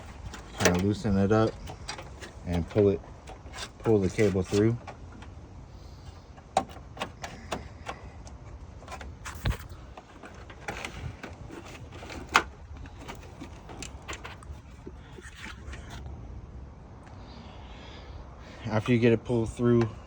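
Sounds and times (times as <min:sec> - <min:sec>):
clicks and knocks of cable: 0:06.4 - 0:16.0.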